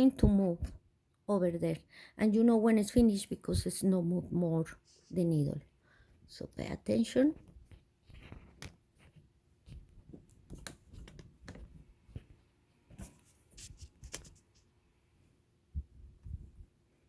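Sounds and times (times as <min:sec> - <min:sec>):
light clicks and taps: 0:07.4 - 0:13.1.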